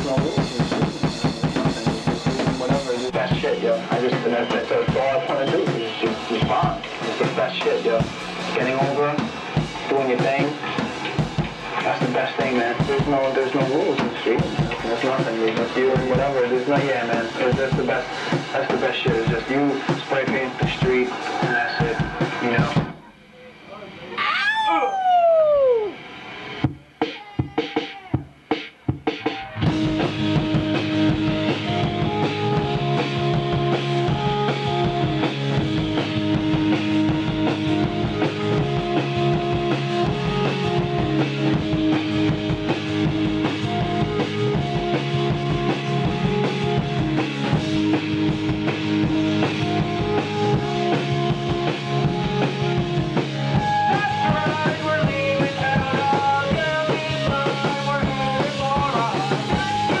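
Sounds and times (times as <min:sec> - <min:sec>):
low repeating riff: 0:00.0 - 0:23.0, 0:29.6 - 1:00.0
drum kit played fast: 0:00.0 - 0:23.6, 0:24.2 - 1:00.0
rock music: 0:00.0 - 1:00.0
higher melody line: 0:29.6 - 1:00.0.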